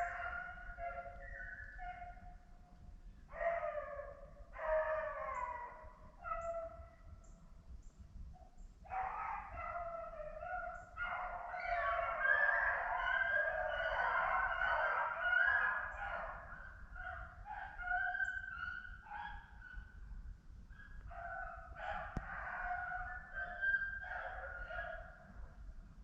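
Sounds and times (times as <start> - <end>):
hounds baying: 0.0 - 2.4, 8.9 - 20.0, 20.7 - 25.6.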